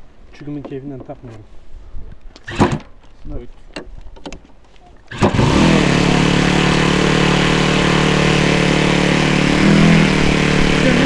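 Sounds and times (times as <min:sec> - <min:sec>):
model airplane motor buzzing: 0:05.1 - 0:11.0.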